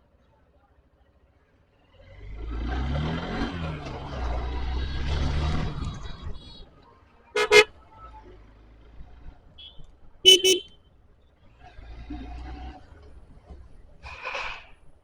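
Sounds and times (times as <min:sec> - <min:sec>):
short horn toot: 0:07.4 - 0:07.7, 0:10.3 - 0:10.8
vehicle engine running: 0:07.4 - 0:08.6.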